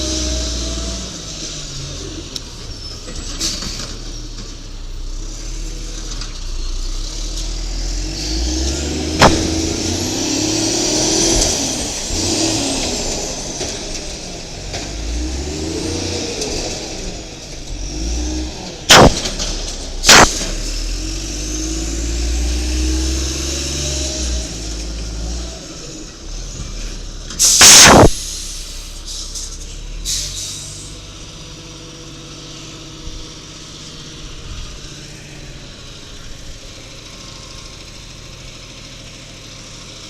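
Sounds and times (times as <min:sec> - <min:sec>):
truck engine revving: 0:00.0 - 0:28.8
sharp loud bangs: 0:09.1 - 0:10.3, 0:18.9 - 0:20.8, 0:27.4 - 0:28.3
burst of hiss: 0:27.4 - 0:30.9.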